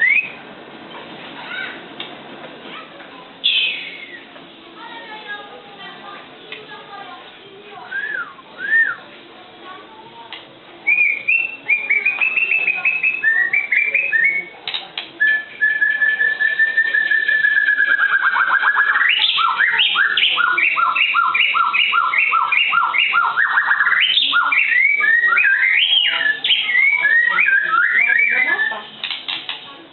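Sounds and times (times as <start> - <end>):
bird singing whistled phrases: 0.0 - 0.4, 3.4 - 4.3, 7.9 - 9.0, 10.8 - 14.6, 15.2 - 28.9.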